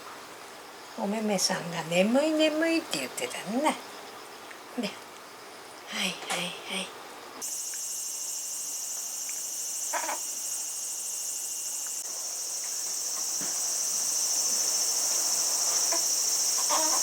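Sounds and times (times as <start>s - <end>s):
high-pitched buzzing hiss: 5.8s - 17.0s.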